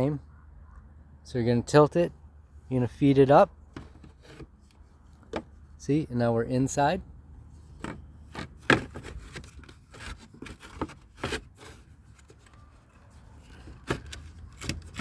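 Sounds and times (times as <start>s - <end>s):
plastic clicks and scraping: 3.7s - 5.5s, 7.7s - 15.0s.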